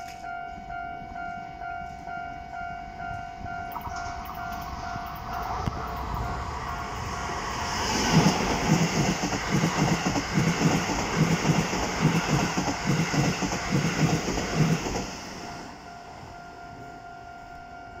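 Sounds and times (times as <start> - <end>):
level crossing warning signal ringing: 0.0 - 7.7, 13.4 - 18.0
train wheels clacking over rail joints: 8.0 - 15.2.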